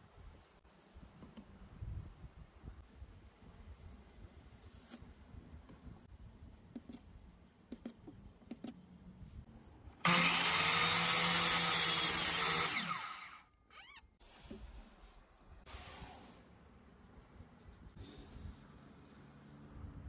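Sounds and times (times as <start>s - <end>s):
electric power tool running: 10.0s - 13.4s.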